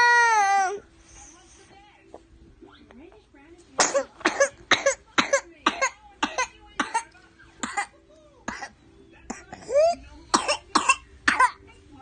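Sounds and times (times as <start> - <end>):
toddler coughing harshly: 3.8 - 7.9, 8.5 - 11.6.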